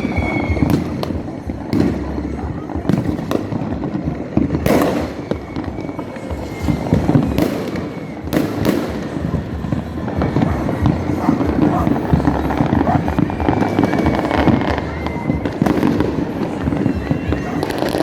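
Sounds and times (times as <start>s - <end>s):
fireworks crackling and banging: 0.0s - 18.0s.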